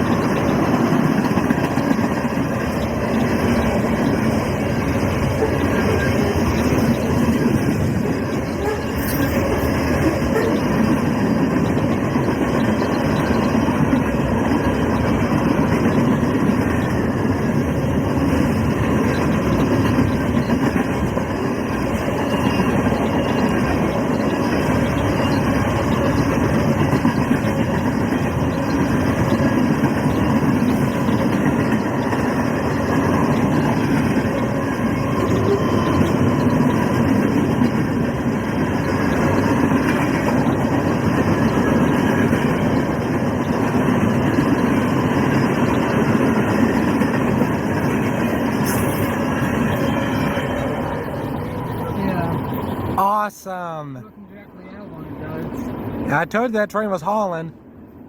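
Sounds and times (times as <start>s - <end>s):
freight train cars rolling past: 0.0s - 58.0s.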